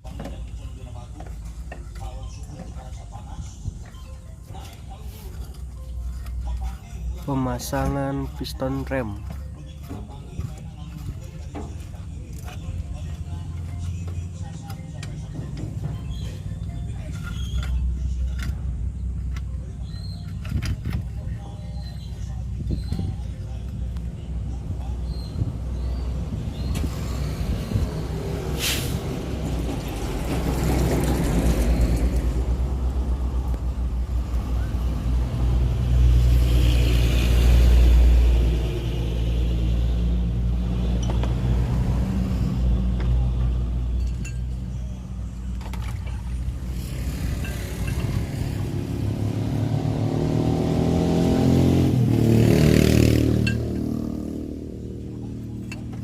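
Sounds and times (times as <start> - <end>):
vehicle engine passing by: 26.5 - 44.0, 45.9 - 56.0
short hiss: 28.6 - 29.0.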